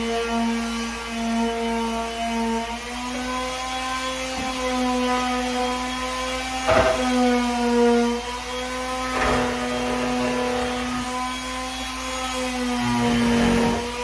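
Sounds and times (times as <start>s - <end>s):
electric sander humming: 2.4s - 14.0s
short scuffing bursts: 6.7s - 7.3s.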